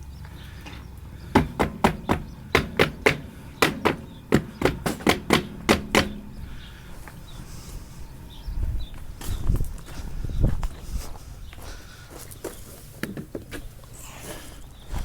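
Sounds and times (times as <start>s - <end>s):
rapid sharp knocks: 1.4s - 6.4s.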